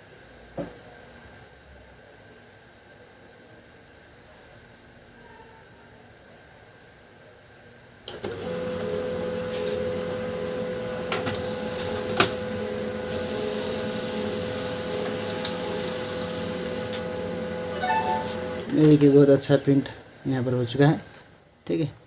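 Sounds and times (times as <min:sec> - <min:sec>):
printer motor hum: 0:08.1 - 0:19.0
paper feed clicks: 0:11.1 - 0:12.4.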